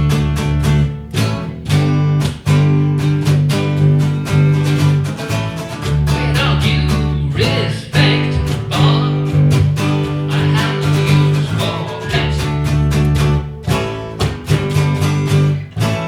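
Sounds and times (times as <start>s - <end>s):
guitars strumming: 0.0s - 16.0s
low bass line: 5.8s - 16.0s.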